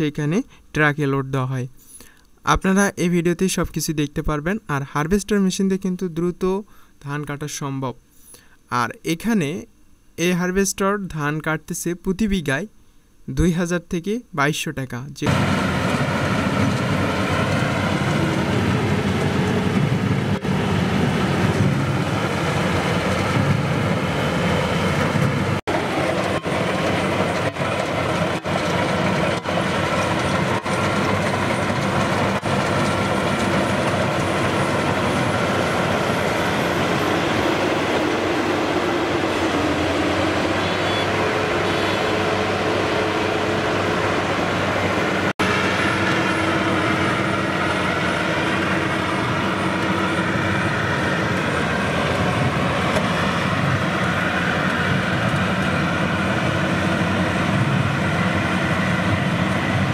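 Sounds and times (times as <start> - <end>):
combine harvester engine drone: 15.2 - 59.9.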